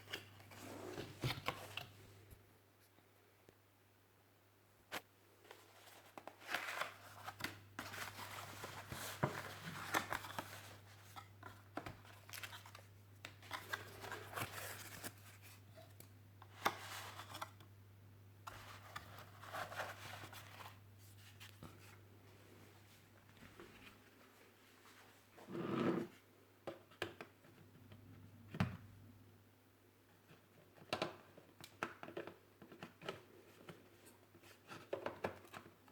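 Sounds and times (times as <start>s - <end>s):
packaging rustling and crinkling: 5.5s - 15.6s.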